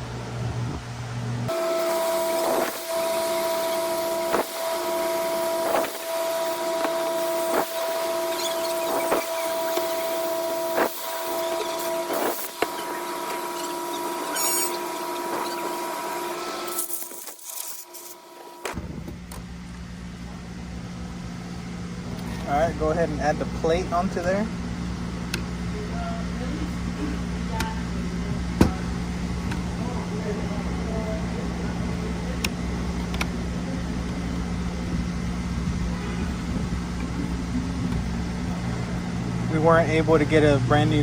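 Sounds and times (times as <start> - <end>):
steady machine tone: 0.0 - 18.8, 19.5 - 41.0
spray hissing: 1.8 - 17.2.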